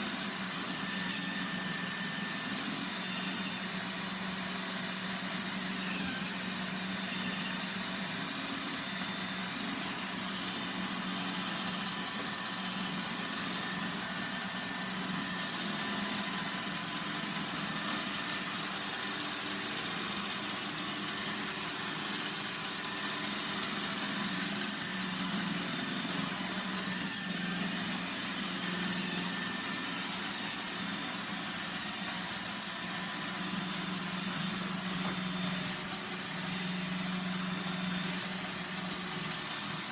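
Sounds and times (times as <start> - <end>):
robot vacuum humming: 0.2 - 39.9
clatter of clicks: 31.8 - 32.8.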